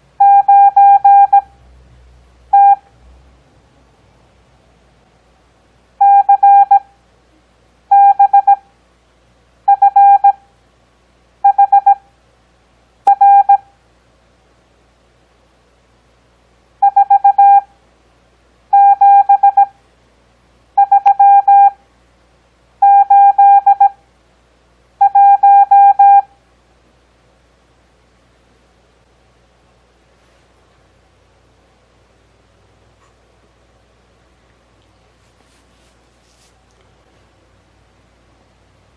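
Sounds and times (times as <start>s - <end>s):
morse code beeps: 0.2s - 1.5s, 2.5s - 2.8s, 6.0s - 6.8s, 7.9s - 8.6s, 9.7s - 10.4s, 11.4s - 12.0s, 13.1s - 13.6s, 16.8s - 17.7s, 18.7s - 19.7s, 20.8s - 21.8s, 22.8s - 24.0s, 25.0s - 26.3s.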